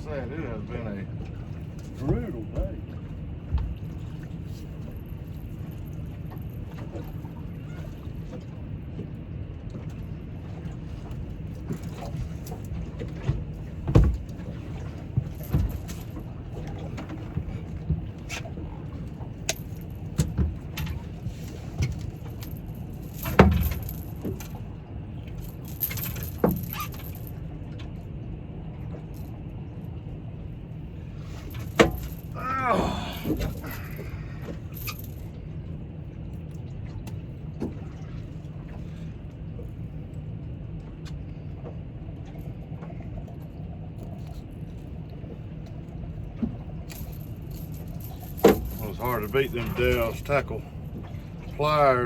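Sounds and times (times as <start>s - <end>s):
steady low rumble: 0.0s - 52.0s.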